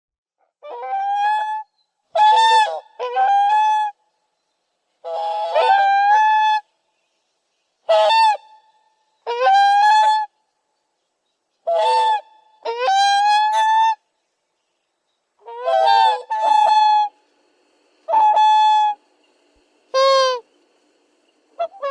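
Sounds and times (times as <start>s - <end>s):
swan honking: 0.6s - 4.0s, 5.0s - 6.7s, 7.8s - 10.4s, 11.6s - 14.1s, 15.4s - 17.2s, 18.1s - 19.0s, 19.9s - 20.5s, 21.6s - 21.9s.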